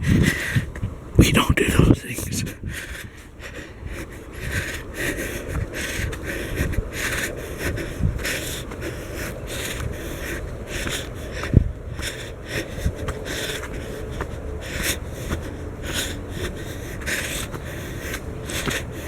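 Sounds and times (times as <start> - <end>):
person breathing hard: 0.0 - 19.0
brisk footsteps: 4.4 - 19.0.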